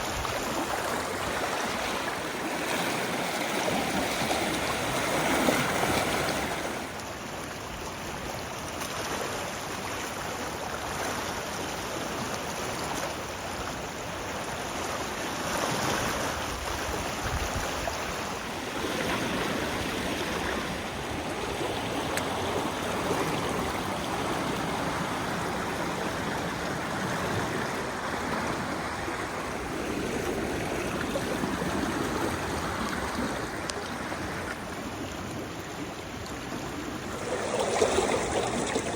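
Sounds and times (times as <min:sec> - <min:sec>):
floodwater rushing: 0:00.0 - 0:07.5, 0:16.0 - 0:38.9.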